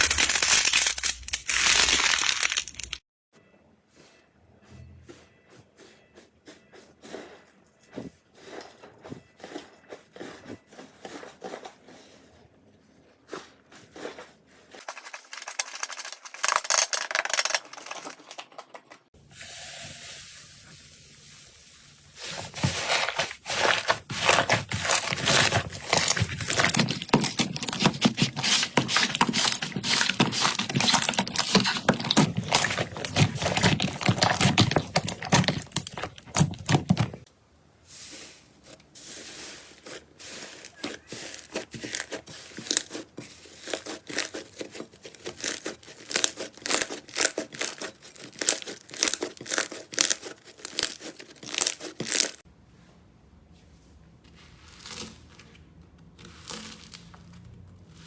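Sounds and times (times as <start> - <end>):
slime squishing and crackling: 13.3 - 18.8, 22.3 - 37.3, 39.8 - 52.4.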